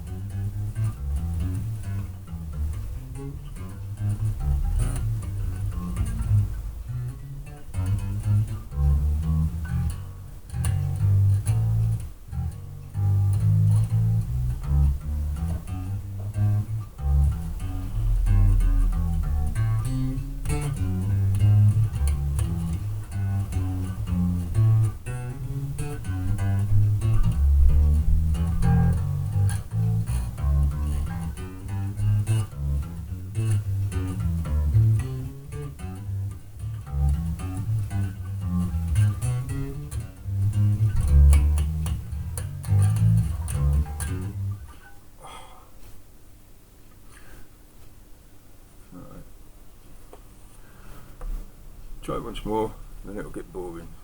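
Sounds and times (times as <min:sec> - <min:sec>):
electric bass notes: 0:00.0 - 0:44.9.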